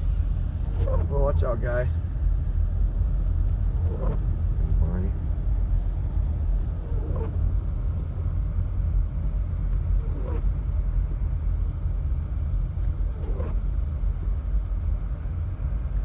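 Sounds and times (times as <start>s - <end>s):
windshield wiper sweeping: 0.0s - 1.2s
car driving on snowy road: 0.0s - 16.0s.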